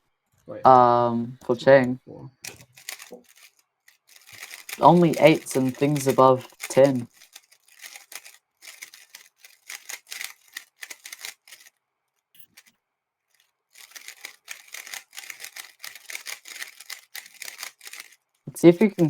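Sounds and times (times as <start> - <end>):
puzzle cube plastic clicking: 2.4 - 11.7, 13.8 - 18.2.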